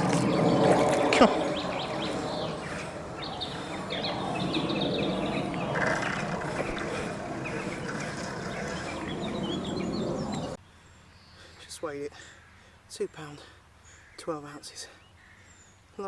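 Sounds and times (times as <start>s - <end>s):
steady rushing noise: 0.0s - 10.6s
small birds chirping: 0.0s - 16.0s.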